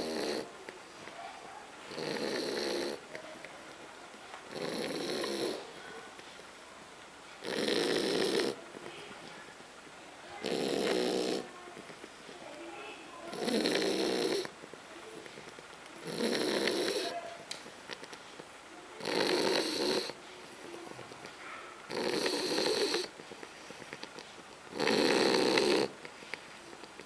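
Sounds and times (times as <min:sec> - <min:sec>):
dog snoring: 0:00.0 - 0:00.5, 0:01.9 - 0:03.1, 0:04.5 - 0:05.7, 0:07.4 - 0:08.8, 0:10.4 - 0:11.9, 0:13.3 - 0:14.5, 0:16.0 - 0:17.2, 0:19.0 - 0:20.2, 0:21.9 - 0:26.0
dog snuffling breaths: 0:00.0 - 0:06.6, 0:07.2 - 0:09.4, 0:10.3 - 0:27.0.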